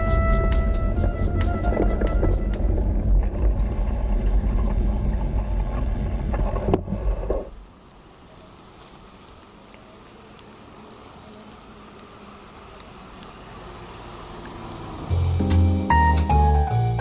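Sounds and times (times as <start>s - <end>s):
wind and riding noise: 0.0s - 16.0s
faint steady hiss: 6.7s - 17.0s.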